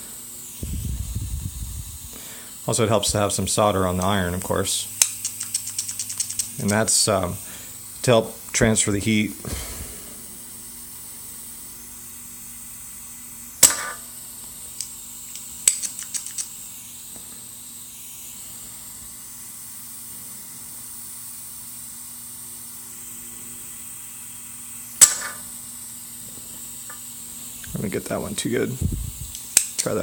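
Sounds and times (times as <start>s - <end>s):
solder sucker snapping: 3.9s - 4.2s, 5.0s - 6.8s, 13.6s - 14.0s, 14.8s - 16.5s, 25.0s - 25.4s.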